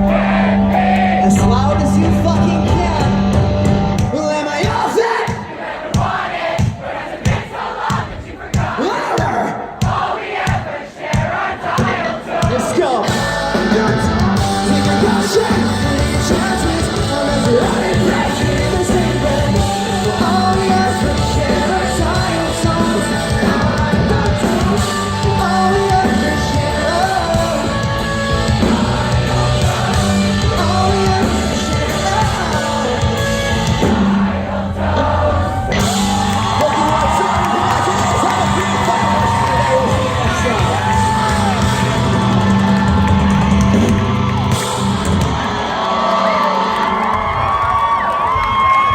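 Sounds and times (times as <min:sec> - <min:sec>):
crowd yelling along: 0:00.0 - 0:48.9
live pop-punk band: 0:00.0 - 0:48.9
person singing: 0:13.0 - 0:33.8.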